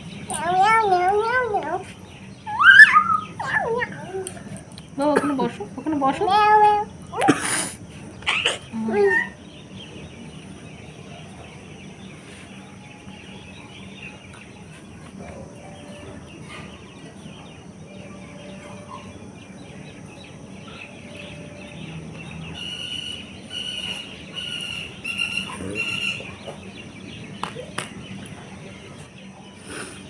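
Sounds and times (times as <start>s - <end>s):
bird calling: 0.0s - 11.5s, 12.2s - 30.0s.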